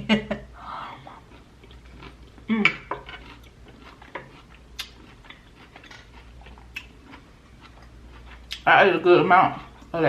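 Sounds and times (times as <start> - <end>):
chewing crunches: 1.1 - 8.7
wet mouth clicks: 4.8 - 5.0.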